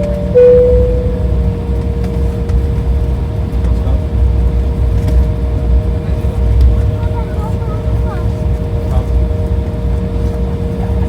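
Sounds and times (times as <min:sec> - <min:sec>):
airplane cabin rumble: 0:00.0 - 0:01.6
jet engines humming: 0:00.0 - 0:01.6.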